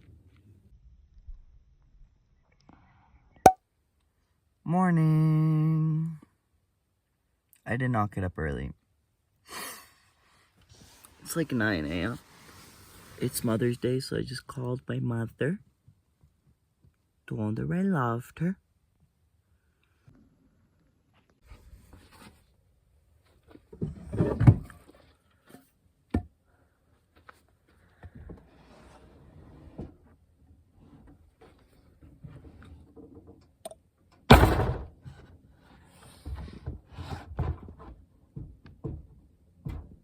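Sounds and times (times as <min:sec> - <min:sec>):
objects knocking and thumping: 0:36.2 - 0:40.0.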